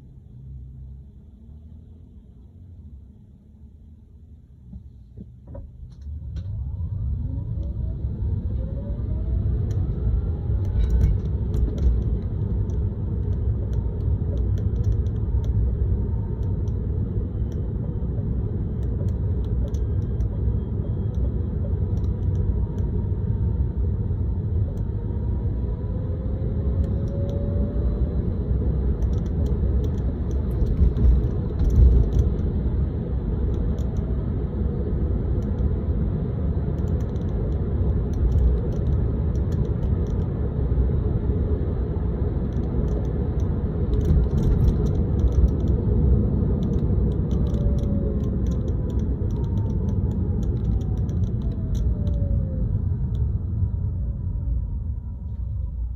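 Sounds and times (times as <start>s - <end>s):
road and tyre rumble: 0.0s - 55.9s
light rattling clicks: 10.6s - 15.6s, 18.8s - 20.4s, 29.0s - 32.5s, 36.8s - 40.3s, 42.5s - 45.8s, 46.6s - 52.3s.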